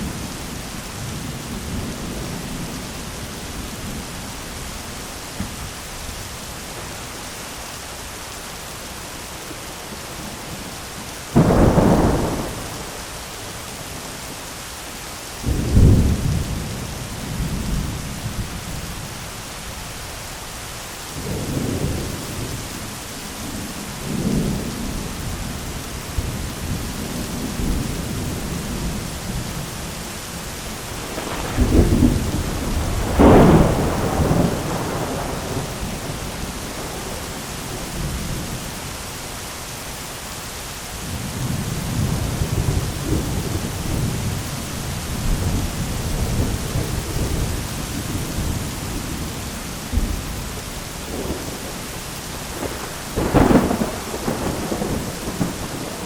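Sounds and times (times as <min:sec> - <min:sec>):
heavy rain on an umbrella: 0:00.0 - 0:56.0
rolling thunder rumbles: 0:11.3 - 0:13.5, 0:23.5 - 0:38.8, 0:41.0 - 0:56.0
thunder clap: 0:11.4 - 0:13.0, 0:31.0 - 0:37.8, 0:52.6 - 0:56.0.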